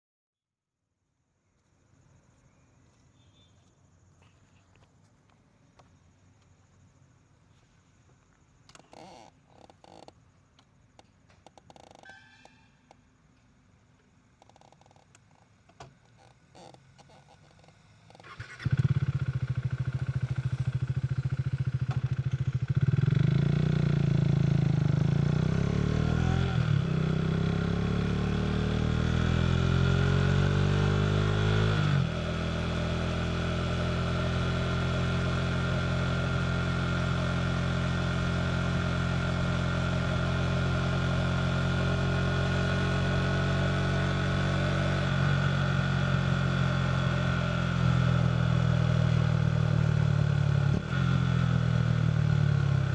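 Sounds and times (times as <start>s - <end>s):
motorcycle engine running: 8.7s - 10.2s, 14.4s - 52.9s.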